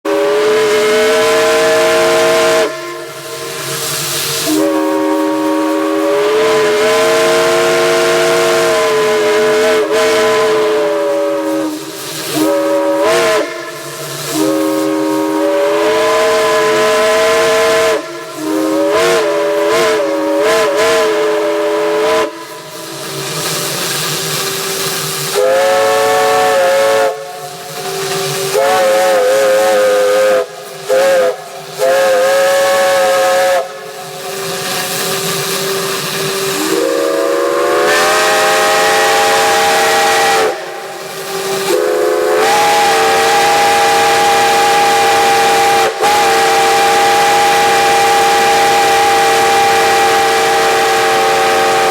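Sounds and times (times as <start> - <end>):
steam hissing: 0.1 - 51.9
steam whistle chord blasts: 0.1 - 51.9.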